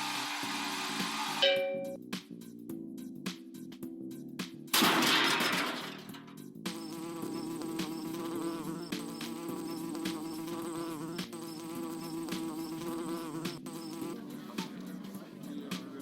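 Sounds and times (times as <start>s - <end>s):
regular percussive beat: 1.4s - 4.8s
insect-like buzz: 6.6s - 14.7s.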